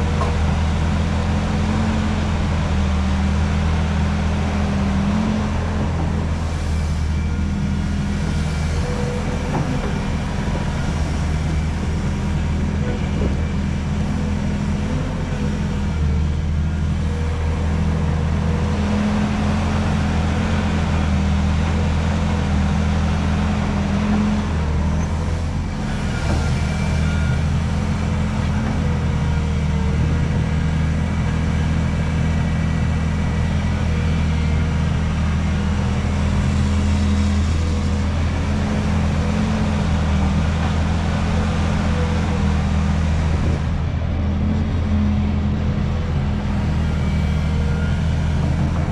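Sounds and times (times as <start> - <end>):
diesel engine running: 0.0 - 48.9.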